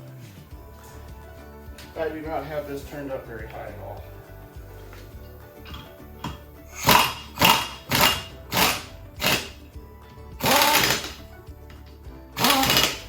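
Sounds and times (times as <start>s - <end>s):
impact wrench bursts: 5.7s - 9.7s, 10.4s - 11.4s, 12.4s - 13.0s.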